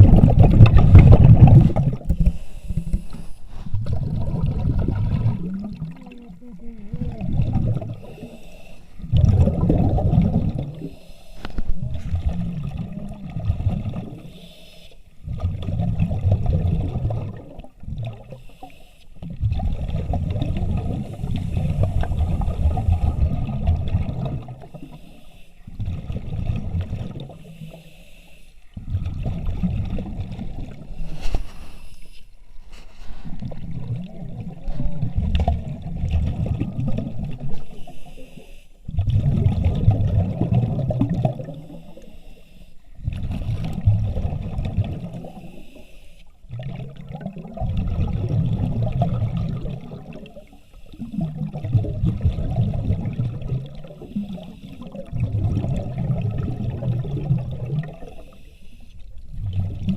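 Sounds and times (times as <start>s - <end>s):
exhaust bubbles: 0.0s - 2.9s, 3.6s - 8.4s, 9.0s - 10.9s, 11.6s - 14.3s, 15.2s - 18.4s, 19.2s - 25.0s, 25.7s - 27.7s, 28.8s - 31.0s, 33.3s - 37.7s, 38.9s - 42.1s, 43.0s - 45.6s, 46.4s - 58.4s, 59.1s - 59.9s
diver breathing: 2.2s - 3.9s, 5.2s - 9.1s, 10.7s - 12.8s, 14.2s - 15.2s, 18.3s - 19.2s, 20.8s - 23.4s, 24.6s - 25.8s, 27.3s - 29.0s, 30.8s - 33.4s, 37.6s - 38.9s, 41.6s - 43.8s, 45.2s - 46.5s, 58.0s - 59.1s.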